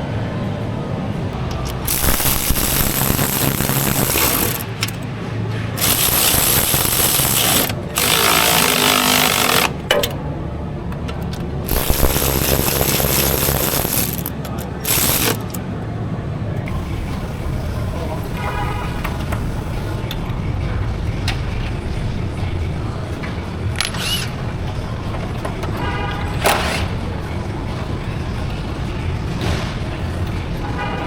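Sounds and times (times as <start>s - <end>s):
steady low hum: 0.0s - 10.8s, 11.6s - 17.6s
pneumatic tool hammering and hissing: 1.6s - 5.0s, 5.8s - 10.1s, 11.7s - 15.6s.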